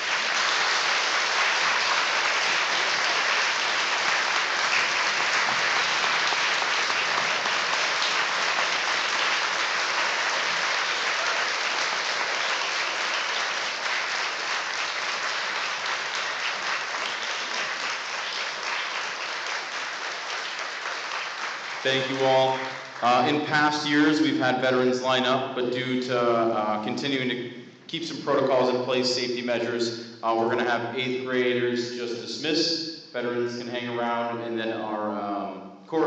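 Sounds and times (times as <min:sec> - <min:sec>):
audience applause: 0:00.0 - 0:23.4.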